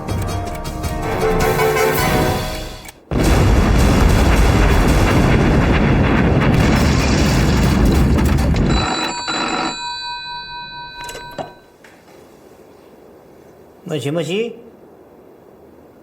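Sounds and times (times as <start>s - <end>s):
big explosion rumbling: 3.1s - 8.9s
telephone ringing: 8.6s - 11.7s.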